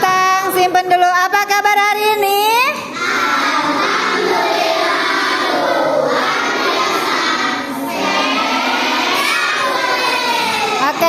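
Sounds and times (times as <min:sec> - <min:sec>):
children chanting together: 0:02.9 - 0:11.0.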